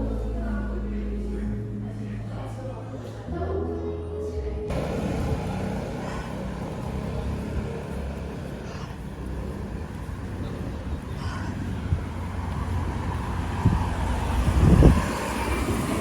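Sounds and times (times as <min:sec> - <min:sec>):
road vehicle rumble and hiss: 0:04.7 - 0:16.0.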